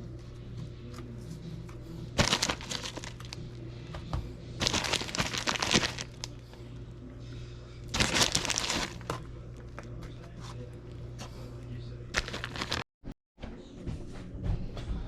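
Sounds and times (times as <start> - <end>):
crinkling handling noise: 2.2 - 3.4, 4.6 - 6.4, 7.9 - 9.9, 12.2 - 12.9.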